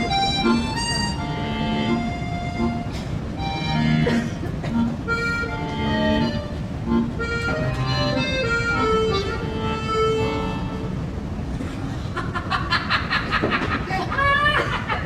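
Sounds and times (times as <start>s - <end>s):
accordion melody: 0.0s - 11.2s
low background noise: 0.0s - 15.0s.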